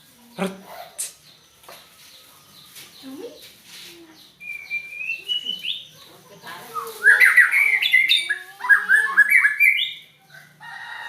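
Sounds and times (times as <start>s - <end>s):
bird singing whistled notes: 4.2s - 10.2s.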